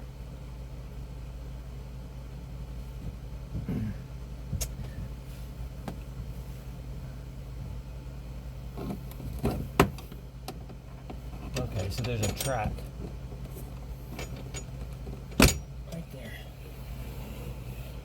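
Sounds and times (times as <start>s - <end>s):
steady low hum: 0.0s - 18.0s
trim clicking and knocking: 8.8s - 15.6s.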